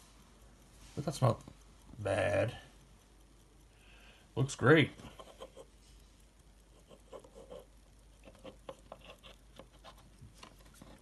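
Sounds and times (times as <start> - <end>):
hands tapping and rubbing watch: 5.0 - 5.8, 6.7 - 11.0.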